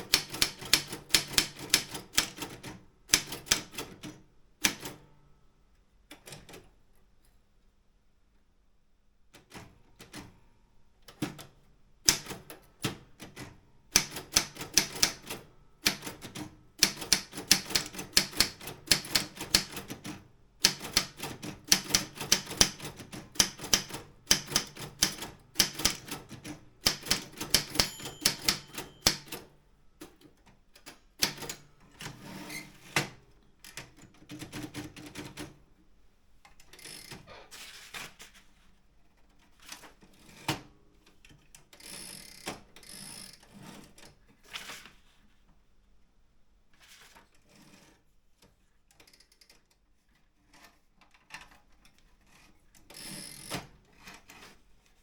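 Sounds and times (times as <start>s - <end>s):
manual typewriter keystrokes: 0.0s - 5.1s, 11.1s - 29.6s, 30.8s - 32.2s.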